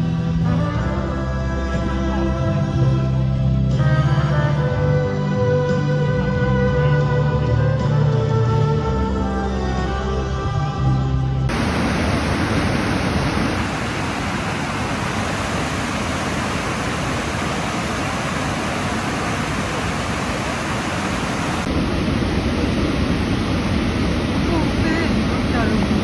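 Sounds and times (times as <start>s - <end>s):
background music: 0.0s - 11.5s
loud rushing noise: 11.5s - 26.0s.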